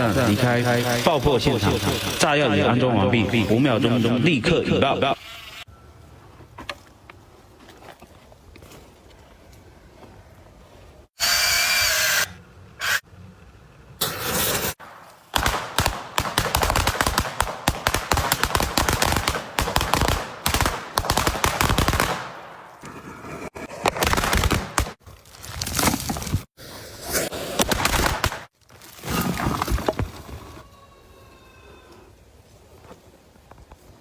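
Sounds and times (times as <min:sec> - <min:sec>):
rapid crackle of sharp bangs: 0:14.0 - 0:22.4, 0:23.8 - 0:25.0.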